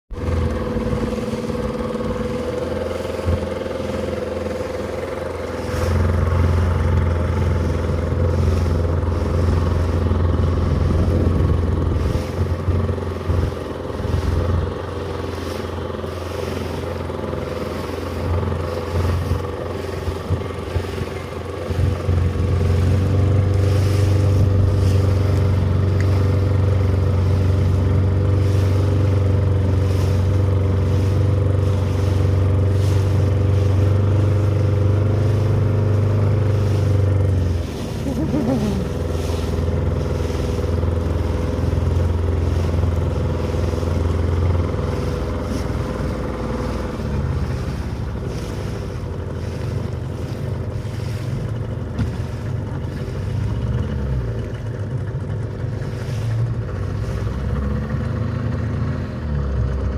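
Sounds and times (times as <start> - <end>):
boat engine humming: 0.0 - 59.9.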